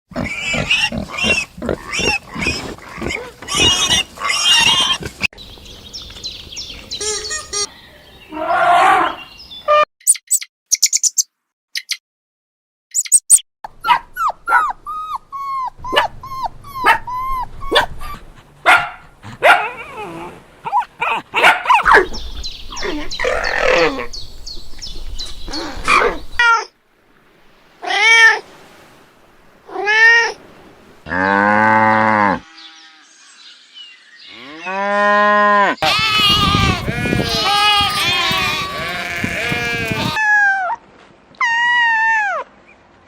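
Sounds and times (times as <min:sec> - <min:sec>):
drawn-out animal calls: 0:00.1 - 0:05.3, 0:35.8 - 0:40.3
mix of animal cries: 0:00.2 - 0:05.3, 0:06.9 - 0:09.8, 0:19.4 - 0:24.2, 0:34.3 - 0:40.8.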